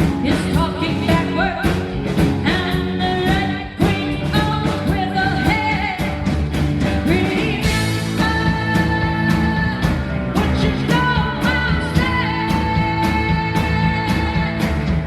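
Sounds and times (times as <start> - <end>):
live rock band playing: 0.0 - 15.0
steady drumbeat: 0.0 - 15.0
person singing: 7.0 - 15.0.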